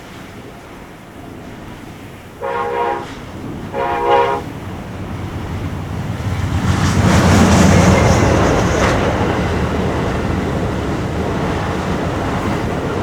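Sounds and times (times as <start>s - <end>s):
passenger train rumbling past: 0.0s - 13.0s
wind buffeting microphone: 0.0s - 13.0s.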